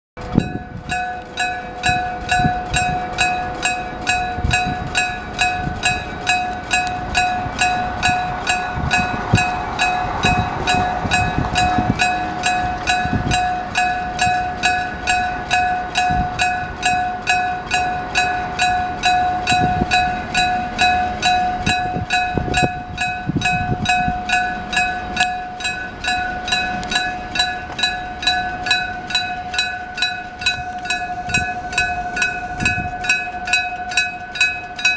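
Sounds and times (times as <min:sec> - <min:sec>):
level crossing bell ringing: 0:30.4 - 0:32.8.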